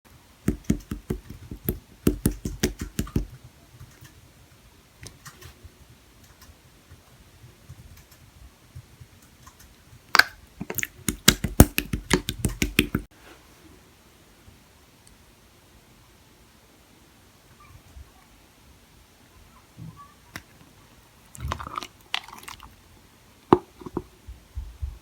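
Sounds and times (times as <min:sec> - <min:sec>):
slime squeezed with sticky pops: 0:00.5 - 0:03.3, 0:10.1 - 0:13.1.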